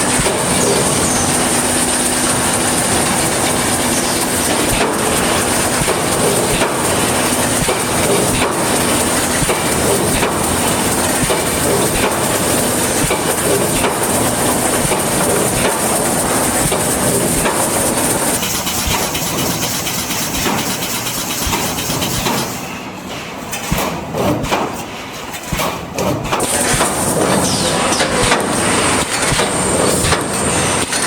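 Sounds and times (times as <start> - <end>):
high machine whine: 0.0 - 22.5
mechanical clatter: 0.0 - 31.0.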